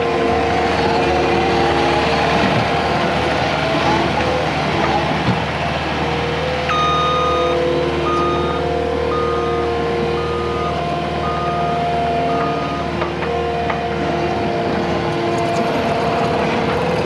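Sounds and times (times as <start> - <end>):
skid steer engine running: 0.0 - 17.0
backup alarm beeping: 6.7 - 12.8.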